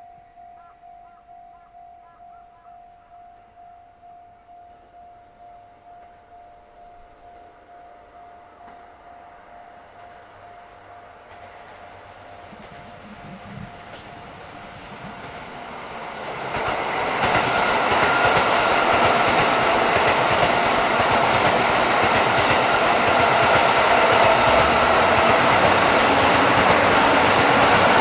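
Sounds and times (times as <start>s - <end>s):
freight train passing: 3.4s - 28.0s
wheels clicking over rail joints: 11.2s - 28.0s.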